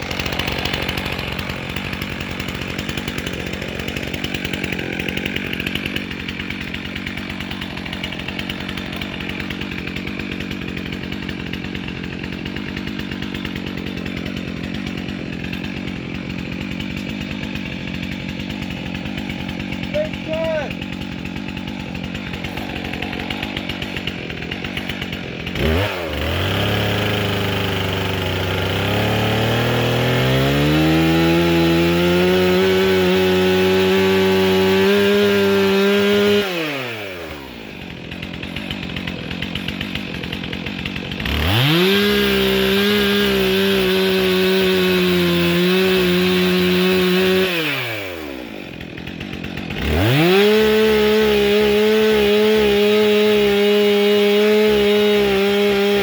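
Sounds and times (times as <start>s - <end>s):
chainsaw cutting wood: 0.0s - 56.0s
chainsaw revving and idling: 0.0s - 56.0s.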